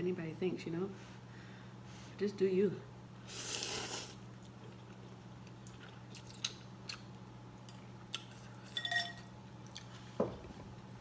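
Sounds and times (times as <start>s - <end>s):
person chewing food: 3.4s - 8.8s, 9.6s - 10.0s.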